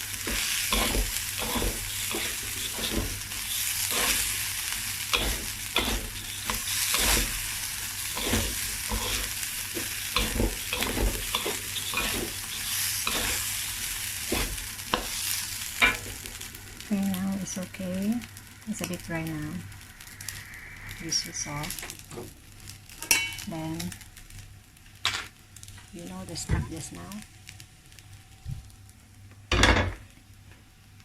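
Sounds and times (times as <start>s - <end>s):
rice sizzling in a pan: 0.0s - 31.0s
spatula scraping a pan: 0.2s - 4.4s, 5.1s - 16.1s.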